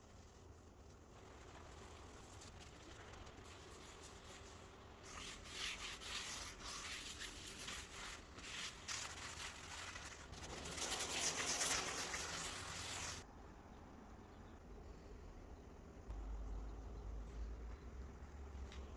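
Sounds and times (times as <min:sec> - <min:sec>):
rubbing on wooden tabletop: 0:05.0 - 0:13.2.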